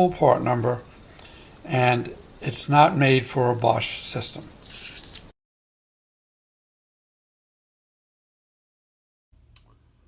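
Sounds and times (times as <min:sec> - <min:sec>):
small click: 0:09.5 - 0:09.8.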